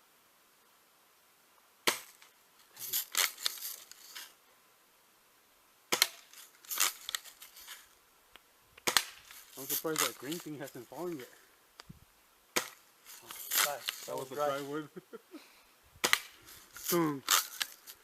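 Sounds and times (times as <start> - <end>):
bb gun shots cracking: 5.9 - 6.3, 8.8 - 9.3, 12.6 - 12.8, 16.0 - 16.4.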